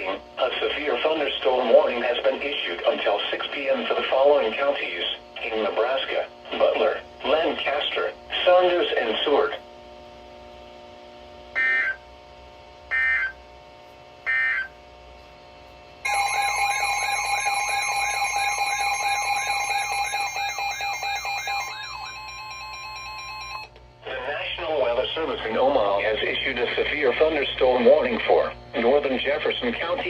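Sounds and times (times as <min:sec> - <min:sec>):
loud alarm tone: 0:11.6 - 0:12.0, 0:12.9 - 0:13.4, 0:14.2 - 0:14.8, 0:16.1 - 0:23.8
screeching data bursts: 0:11.6 - 0:12.0, 0:12.9 - 0:13.4, 0:14.3 - 0:14.7.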